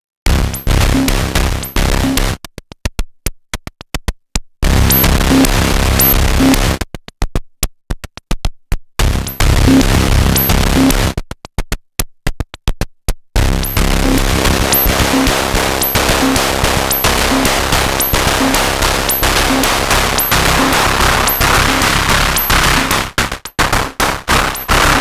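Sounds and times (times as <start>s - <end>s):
noisy synthesizer drum hits: 13.4s - 25.0s
sharp synthesizer clicks: 13.6s - 25.0s.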